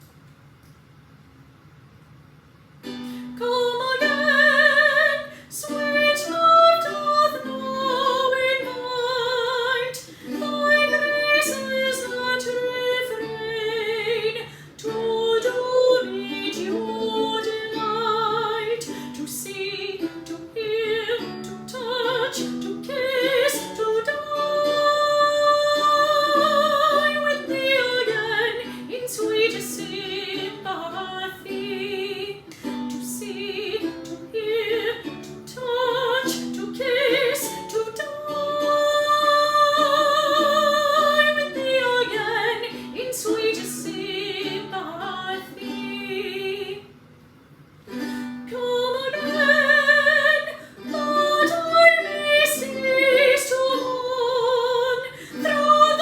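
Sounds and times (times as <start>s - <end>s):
plucked strings: 2.8s - 46.8s, 47.8s - 56.0s
woman singing with vibrato: 3.2s - 47.0s, 47.9s - 56.0s.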